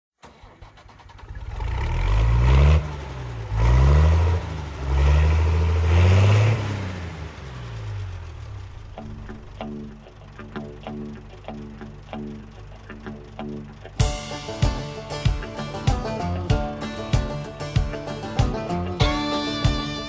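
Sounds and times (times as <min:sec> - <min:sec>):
diesel engine revving: 0:00.2 - 0:20.0.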